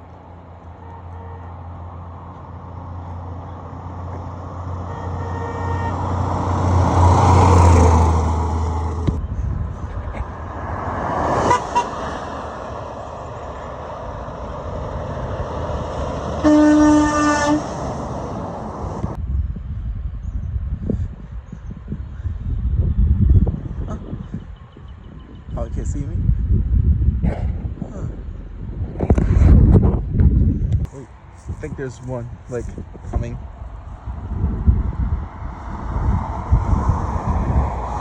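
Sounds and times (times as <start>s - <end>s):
trucks passing on road: 0.0s - 38.0s
truck horn: 0.6s - 2.0s, 4.7s - 6.5s, 11.4s - 12.4s, 16.3s - 18.0s.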